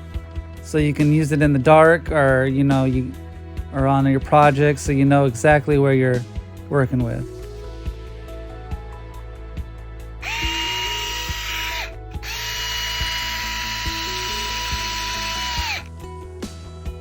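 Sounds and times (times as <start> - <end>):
background music: 0.0 - 17.0
electric screwdriver whirring: 10.2 - 15.9.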